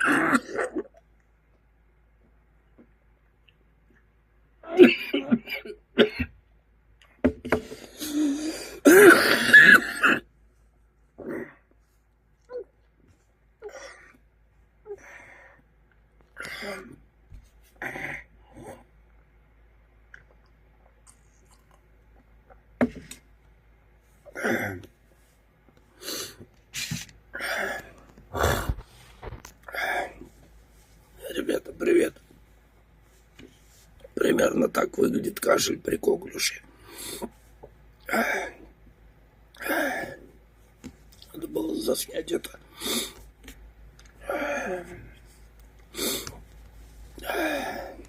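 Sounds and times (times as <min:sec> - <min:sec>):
person coughing: 0:00.0 - 0:01.0, 0:04.7 - 0:06.4, 0:08.0 - 0:10.3, 0:24.3 - 0:24.9.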